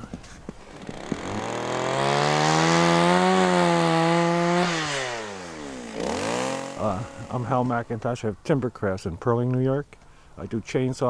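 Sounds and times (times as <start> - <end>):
chainsaw revving: 0.6 - 8.0.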